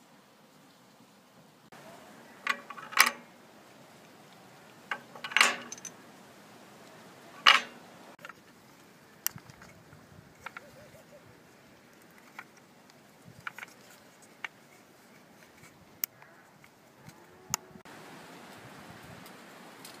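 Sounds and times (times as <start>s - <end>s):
metal tools clinking: 2.4s - 3.3s, 4.9s - 6.0s, 7.4s - 8.3s.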